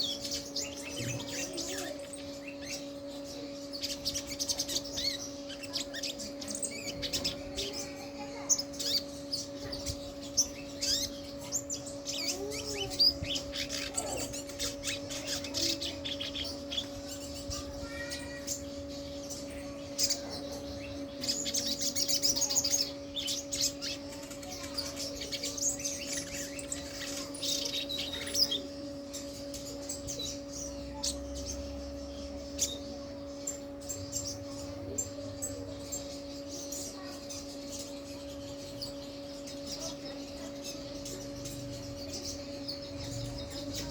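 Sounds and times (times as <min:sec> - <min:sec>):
bird chirps and trills: 0:00.0 - 0:43.9
steady low hum: 0:00.0 - 0:43.9.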